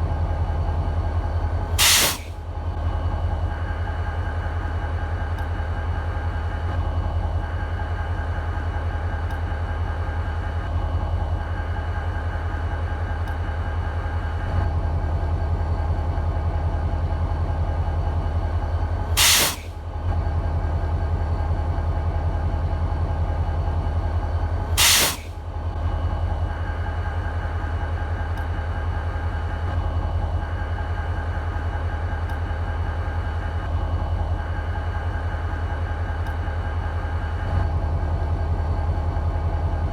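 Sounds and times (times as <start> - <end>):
diesel locomotive idling: 0.0 - 39.9
air release hiss: 1.8 - 2.4, 19.2 - 19.8, 24.8 - 25.4.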